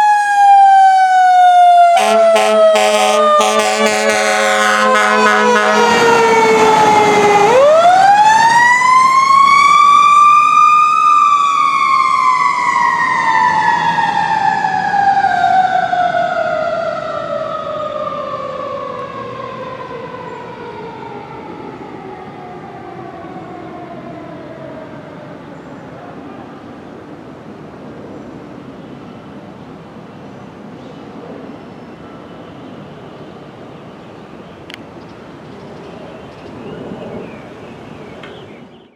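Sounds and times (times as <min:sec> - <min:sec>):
fire engine air horn: 0:00.0 - 0:08.3
siren wailing: 0:00.0 - 0:25.5.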